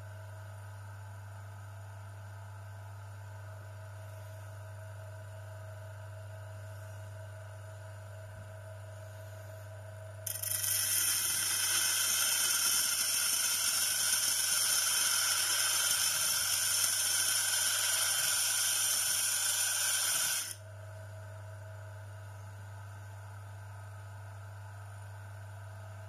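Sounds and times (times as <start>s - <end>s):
high-pitched spinning tool grinding: 10.3s - 20.6s.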